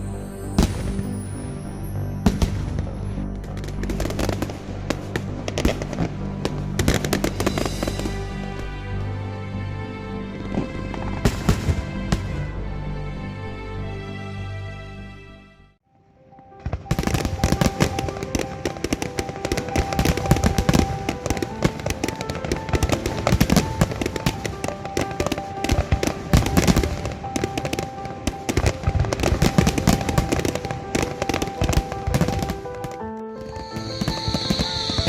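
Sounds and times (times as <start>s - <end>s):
music playing: 0.0s - 35.0s
fireworks bangs and crackling: 2.2s - 8.4s, 10.5s - 12.5s, 16.6s - 35.0s.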